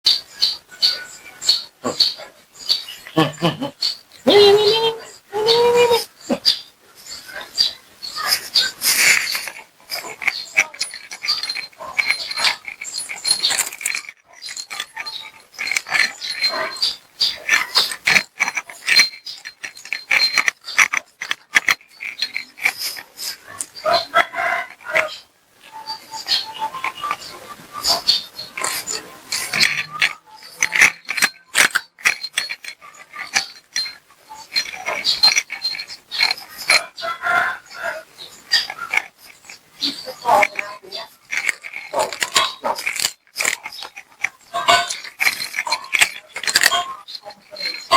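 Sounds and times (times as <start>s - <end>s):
cat chewing: 38.3s - 47.8s.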